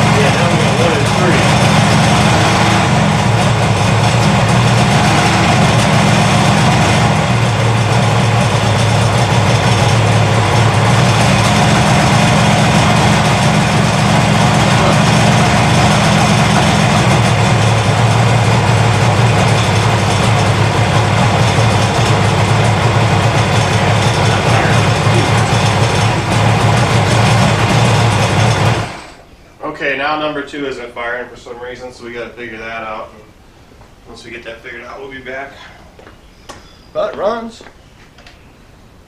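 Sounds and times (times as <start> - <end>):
two-stroke engine running: 0.0 - 29.3.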